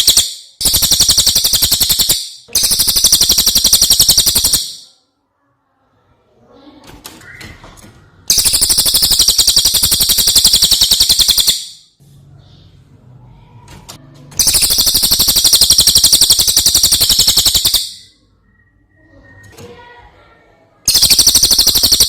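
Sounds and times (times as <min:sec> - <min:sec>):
songbird fast trills: 0:00.0 - 0:04.8, 0:08.3 - 0:11.8, 0:14.4 - 0:18.1, 0:20.9 - 0:22.0.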